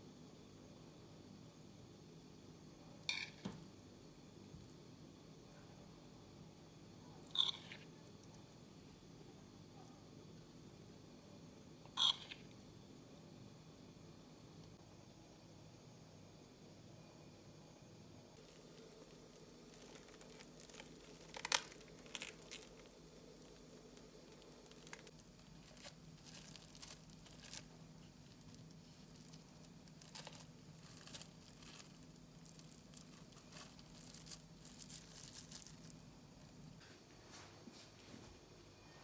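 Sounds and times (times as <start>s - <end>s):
low steady hum: 0.0s - 39.0s
rustling and crinkling: 18.4s - 38.4s.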